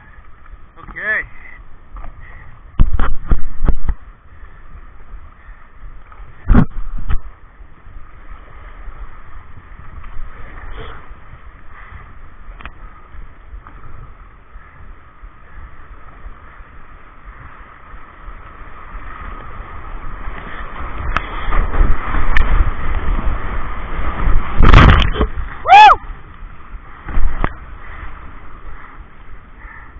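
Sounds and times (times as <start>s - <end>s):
water rushing and gurgling: 18.1s - 28.8s.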